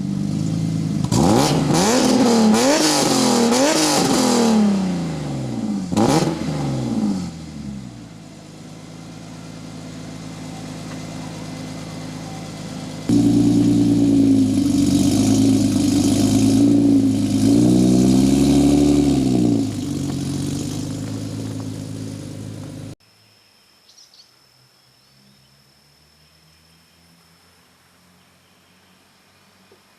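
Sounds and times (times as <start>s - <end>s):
car engine revving and idling: 0.0s - 23.0s.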